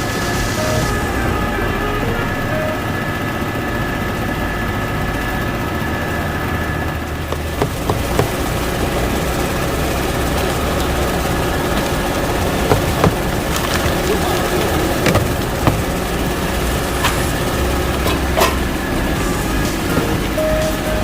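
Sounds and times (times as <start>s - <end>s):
short knocks: 7.3s - 8.6s, 12.7s - 14.2s, 14.9s - 16.2s
steady tones: 7.3s - 8.8s.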